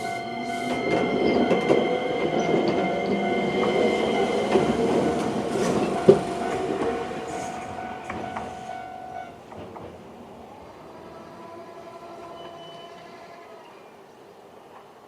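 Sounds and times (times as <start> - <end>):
level crossing warning alarm: 0.0 - 9.5
electric train rumbling: 0.0 - 13.7.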